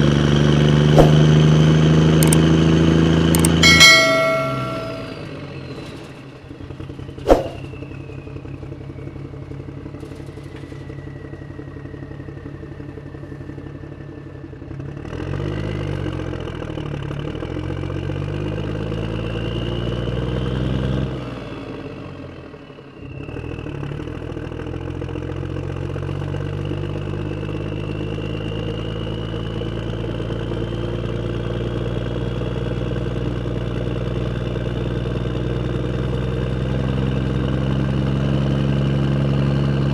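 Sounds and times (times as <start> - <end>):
sharp knock: 1.0 - 1.3, 7.3 - 7.6.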